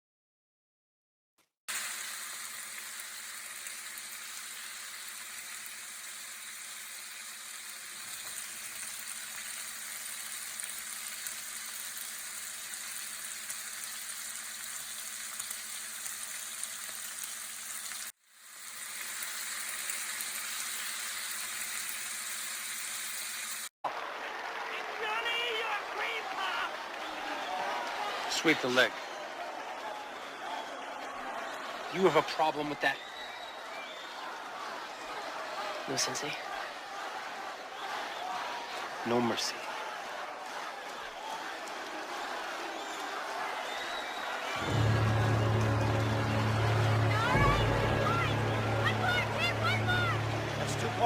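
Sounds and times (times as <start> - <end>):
sizzling crackling hiss: 1.7 - 23.7.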